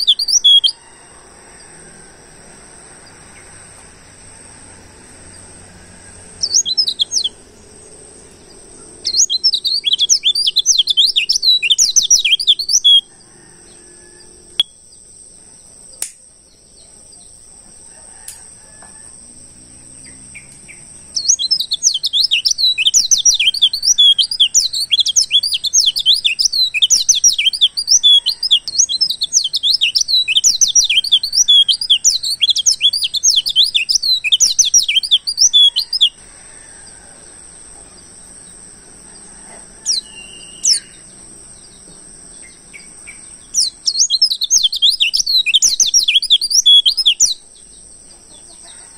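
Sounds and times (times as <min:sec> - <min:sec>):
white-eye bird twittering song: 0:00.0 - 0:00.8, 0:06.2 - 0:15.2, 0:19.8 - 0:36.2, 0:39.8 - 0:48.9.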